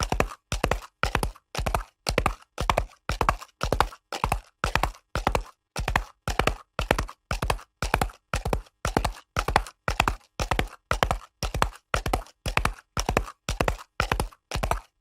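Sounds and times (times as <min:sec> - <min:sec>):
horse hooves galloping on concrete: 0:00.0 - 0:15.0.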